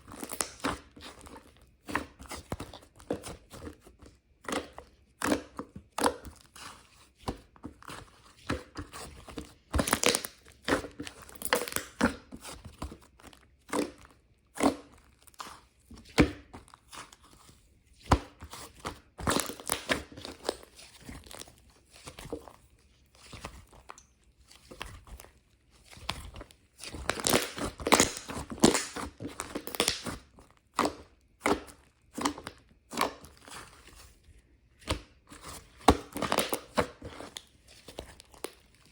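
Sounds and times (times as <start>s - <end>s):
plastic crinkling and tearing: 27.0s - 30.6s.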